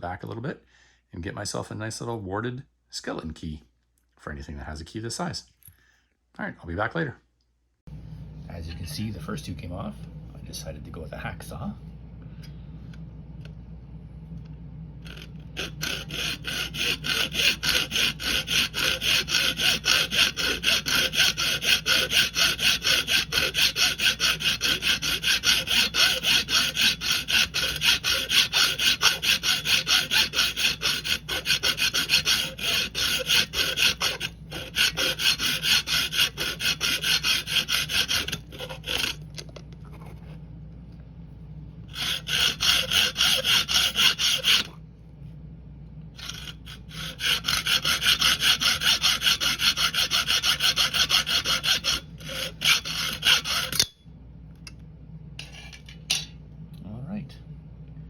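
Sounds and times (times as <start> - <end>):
hacksaw sawing metal: 15.1 - 39.2, 41.9 - 44.7, 46.2 - 53.9.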